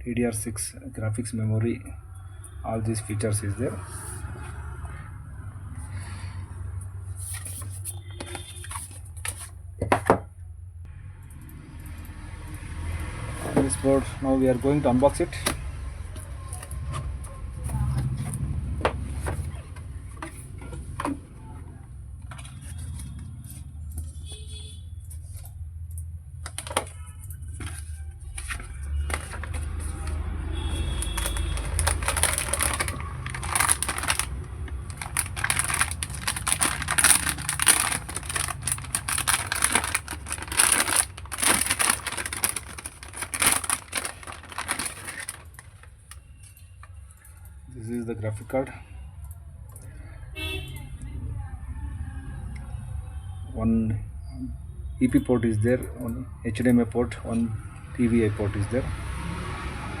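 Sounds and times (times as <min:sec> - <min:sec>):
cardboard tearing and crinkling: 0:31.1 - 0:45.9.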